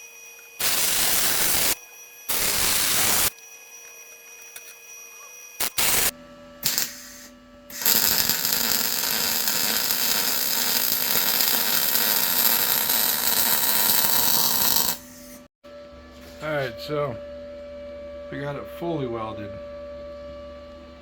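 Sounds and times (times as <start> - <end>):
welding arc hissing: 0.6 - 3.4, 5.6 - 15.4.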